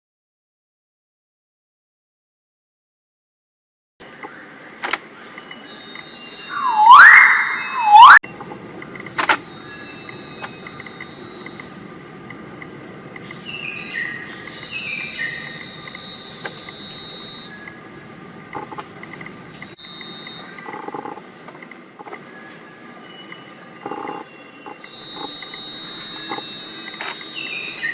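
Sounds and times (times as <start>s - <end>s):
insects trilling: 4.0s - 27.9s
faint bird calls: 6.4s - 8.2s
bird notes stepping down: 6.5s - 8.2s.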